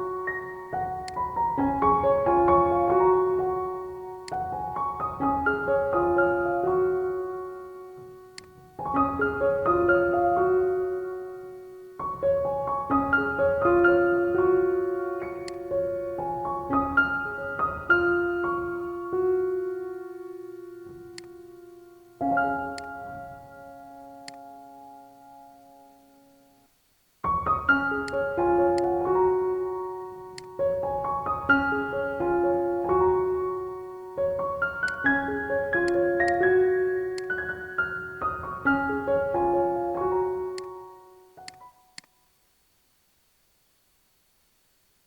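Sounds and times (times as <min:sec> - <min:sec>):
gentle keyboard melody: 0:00.0 - 0:42.3.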